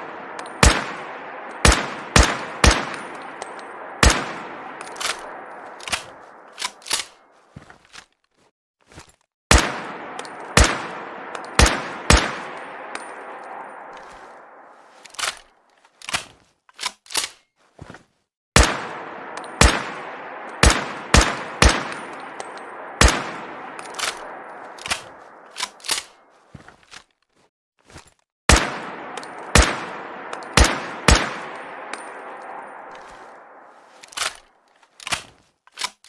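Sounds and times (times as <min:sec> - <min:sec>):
echoing rifle gunshots: 0:00.0 - 0:07.3, 0:09.5 - 0:15.4, 0:18.6 - 0:26.3, 0:28.5 - 0:34.4
sharp rifle clicks and clacks: 0:00.3 - 0:07.3, 0:15.0 - 0:17.5, 0:18.6 - 0:26.3, 0:28.5 - 0:36.0.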